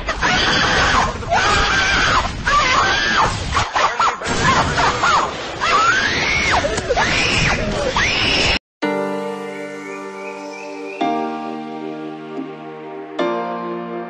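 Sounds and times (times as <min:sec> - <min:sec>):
high-pitched screaming voices: 0:00.1 - 0:08.6.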